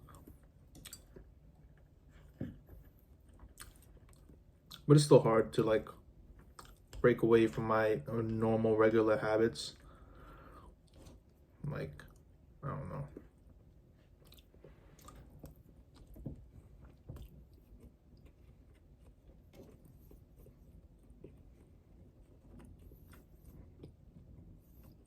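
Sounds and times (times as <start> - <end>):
person chewing: 0.0 - 4.9, 6.3 - 7.0, 9.8 - 11.5, 13.0 - 25.0.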